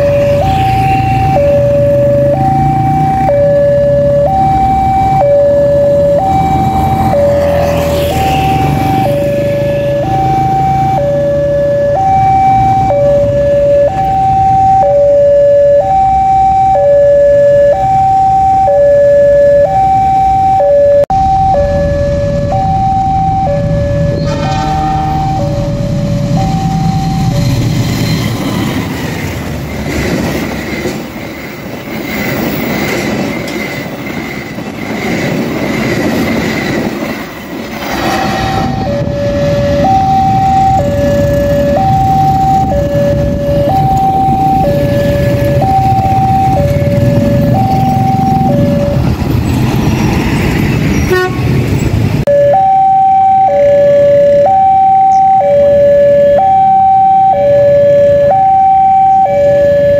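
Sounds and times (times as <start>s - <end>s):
train rumbling past: 0.0s - 14.9s, 21.2s - 52.3s
level crossing warning siren: 0.0s - 30.0s, 30.6s - 59.9s.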